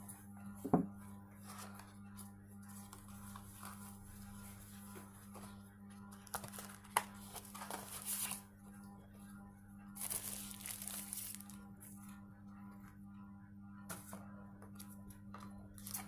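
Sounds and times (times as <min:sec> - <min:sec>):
plastic wrap and paper crinkling: 0:02.6 - 0:08.5, 0:10.0 - 0:11.6, 0:15.8 - 0:16.0.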